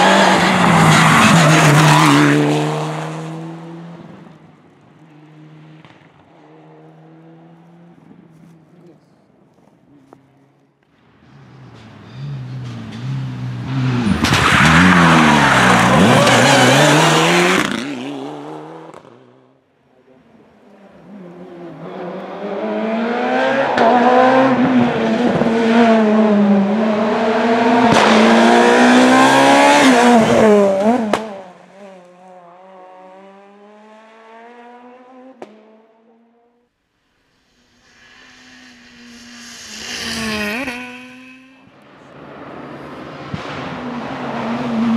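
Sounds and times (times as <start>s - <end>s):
rally cars passing at speed: 0.0s - 8.6s, 10.8s - 44.9s
distant engine accelerating: 11.3s - 19.6s, 20.9s - 35.8s, 37.8s - 44.9s.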